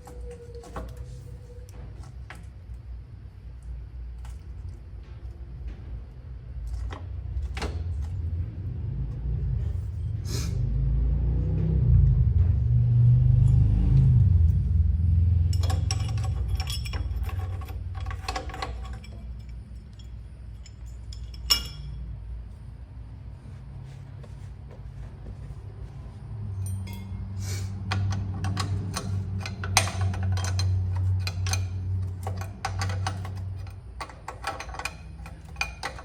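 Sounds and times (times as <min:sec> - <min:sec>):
low rumble: 0:04.7 - 0:18.2
metal tools clinking: 0:15.4 - 0:22.1, 0:26.5 - 0:36.0.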